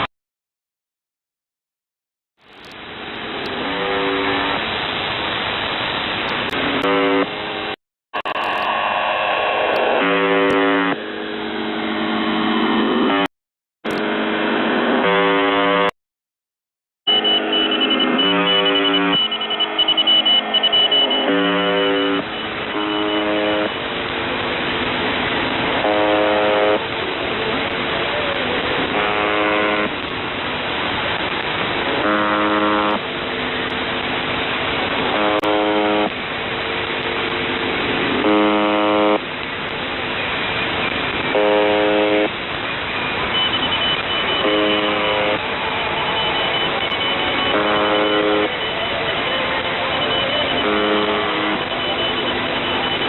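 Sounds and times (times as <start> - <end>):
radio buzz tones: 2.5 - 4.7, 6.3 - 13.3, 13.9 - 15.9, 17.1 - 25.0, 25.6 - 30.1, 31.2 - 33.8, 34.8 - 36.2, 37.1 - 39.4, 41.1 - 42.5, 43.2 - 53.0
radio hiss and static: 2.5 - 13.3, 17.1 - 53.0
gliding interference whistles: 17.1 - 23.7, 43.2 - 53.0
steady high whistle: 17.1 - 23.7, 43.3 - 53.0.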